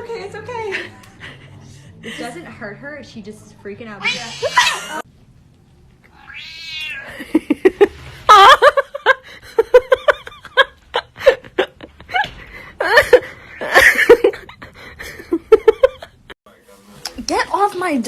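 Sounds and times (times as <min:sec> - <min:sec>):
cat caterwauling: 0:04.0 - 0:04.9, 0:06.1 - 0:07.2.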